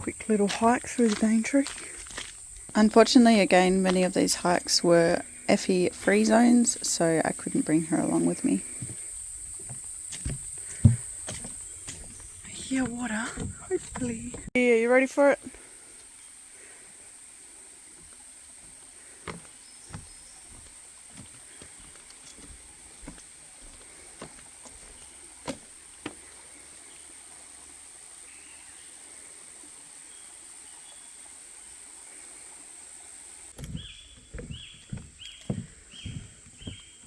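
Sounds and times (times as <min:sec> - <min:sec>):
insects droning: 0:00.0 - 0:37.0
footfalls: 0:08.8 - 0:14.5, 0:33.6 - 0:37.0
thumps: 0:08.8 - 0:14.5, 0:33.6 - 0:37.0.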